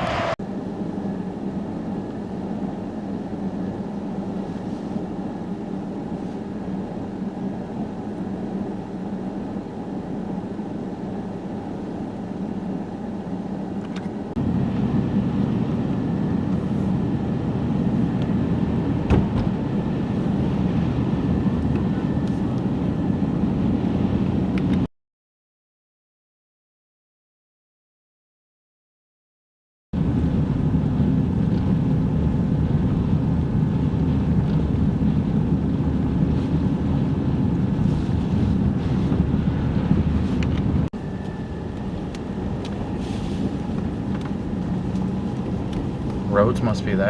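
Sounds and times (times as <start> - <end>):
vehicle engine and road noise: 0.0 - 24.9, 30.0 - 47.0.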